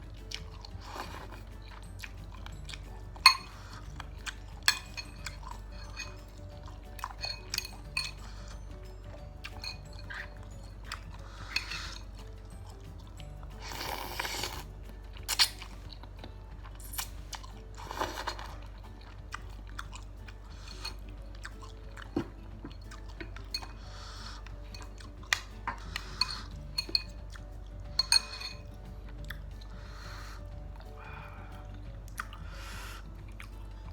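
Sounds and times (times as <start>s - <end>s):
chewing and slurping: 0.0s - 33.9s
utensils clicking on bowl: 0.3s - 8.6s, 9.5s - 12.8s, 24.5s - 27.3s, 27.9s - 28.6s.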